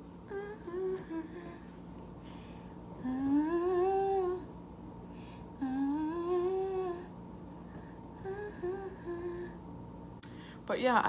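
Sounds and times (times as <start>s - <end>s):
woman humming: 0.2s - 1.8s, 3.0s - 4.6s, 5.6s - 7.2s, 8.2s - 9.6s.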